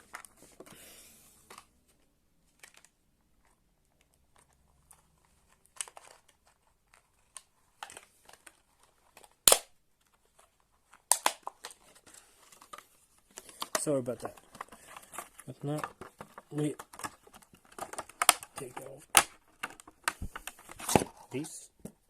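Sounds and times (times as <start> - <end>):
packaging crinkling: 2.6 - 21.6
loud sharp crack: 9.5 - 9.7.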